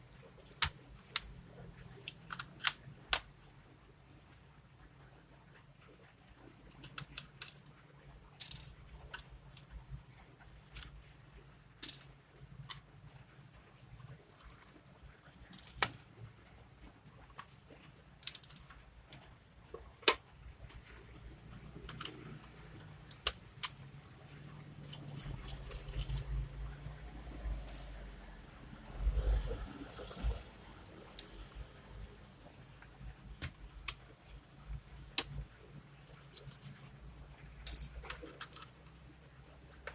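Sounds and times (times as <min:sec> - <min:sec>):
laptop parts clicking and rattling: 0:02.0 - 0:03.4, 0:06.6 - 0:09.8, 0:10.4 - 0:12.9, 0:13.7 - 0:16.0, 0:17.2 - 0:26.5, 0:36.1 - 0:37.0, 0:37.6 - 0:38.9, 0:39.6 - 0:39.9.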